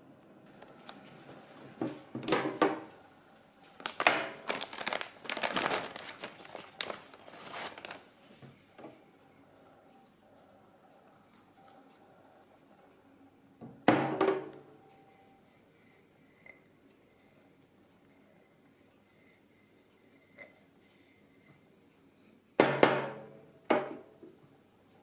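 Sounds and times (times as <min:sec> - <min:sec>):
crinkling rustles: 0:03.6 - 0:08.6.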